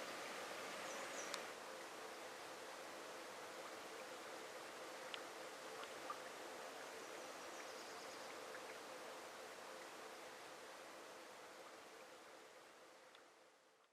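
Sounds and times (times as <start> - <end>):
stream water rushing: 0.0 - 12.8
small ticks: 1.2 - 1.5, 5.0 - 6.3, 13.1 - 13.9.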